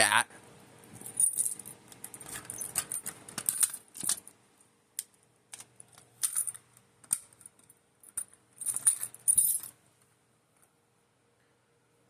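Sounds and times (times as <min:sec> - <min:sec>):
keys jingling: 0:01.0 - 0:04.3, 0:05.8 - 0:09.8
small clicks and clinks: 0:01.0 - 0:04.4, 0:05.0 - 0:09.8.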